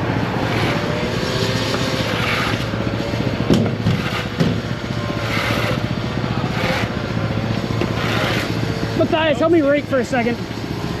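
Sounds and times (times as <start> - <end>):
construction machinery engine running: 0.0 - 11.0
sharp knocks: 3.4 - 4.6.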